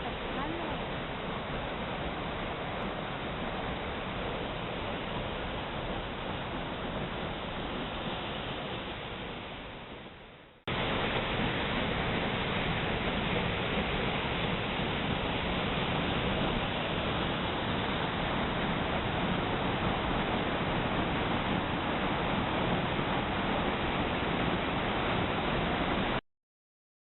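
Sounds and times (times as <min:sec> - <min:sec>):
waterfall pouring: 0:10.7 - 0:26.2.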